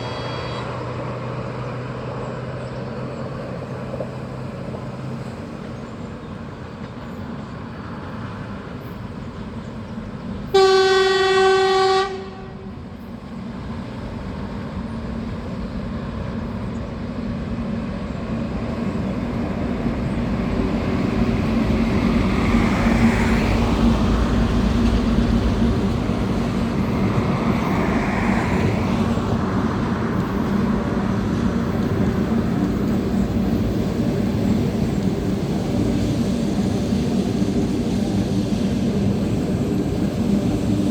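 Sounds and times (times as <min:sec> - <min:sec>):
locomotive horn blast: 0:00.0 - 0:00.9, 0:10.5 - 0:12.8
train rumble and wheels on rails: 0:00.0 - 0:40.9.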